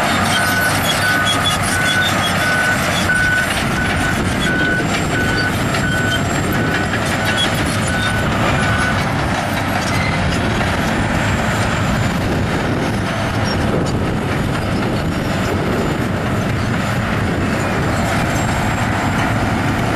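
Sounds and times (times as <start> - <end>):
heavy diesel machinery running: 0.0 - 19.9
reversing alarm beeping: 0.1 - 9.1.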